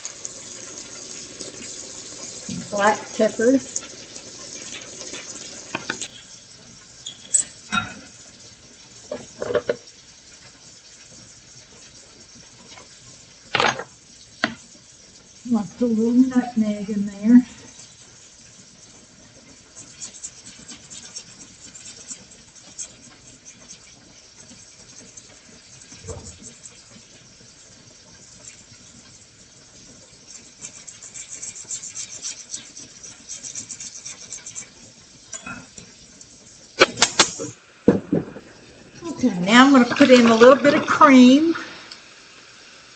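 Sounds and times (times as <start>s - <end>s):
faint steady hiss: 0.0s - 42.9s
spinach sizzling in a pan: 0.0s - 42.9s
utensil knocks and scrapes: 4.5s - 6.2s, 9.1s - 9.9s, 13.5s - 14.7s, 19.8s - 27.2s, 36.8s - 38.6s
nutmeg grating strokes: 15.3s - 37.6s.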